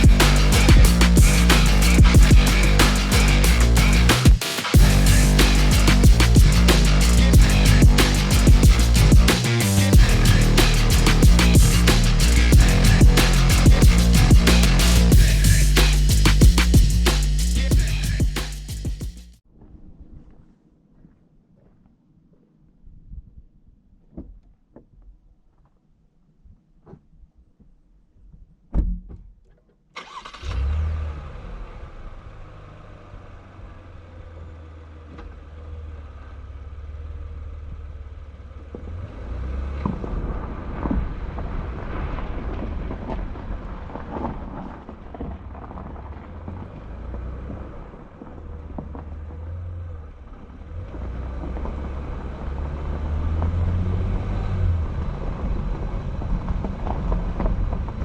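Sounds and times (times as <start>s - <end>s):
car engine running: 0.0s - 19.4s.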